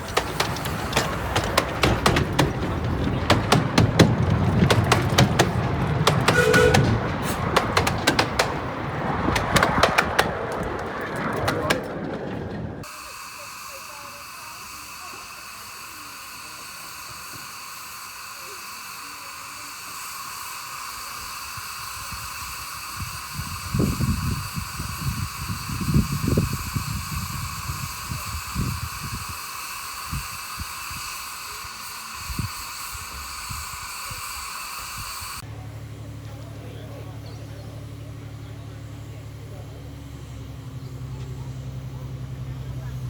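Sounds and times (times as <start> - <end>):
steam locomotive hissing steam: 0.0 - 12.0, 12.8 - 43.0
wind buffeting microphone: 0.0 - 12.9, 22.0 - 29.4.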